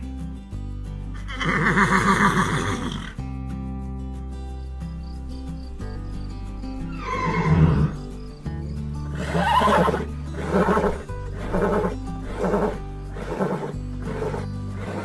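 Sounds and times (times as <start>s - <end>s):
background music: 0.0s - 15.0s
horse whinnying: 1.2s - 3.2s, 6.9s - 8.0s, 9.1s - 15.0s.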